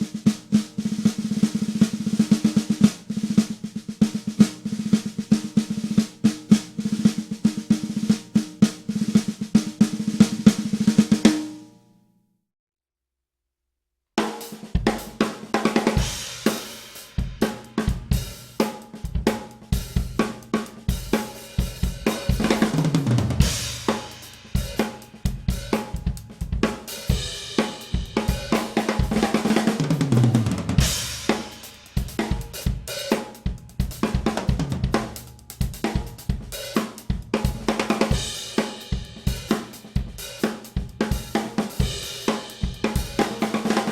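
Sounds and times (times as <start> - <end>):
drum fill around kit: 0.0 - 11.6, 14.2 - 43.9
drum kit groove: 0.0 - 11.6, 14.2 - 43.9
snare drum: 14.2 - 43.9.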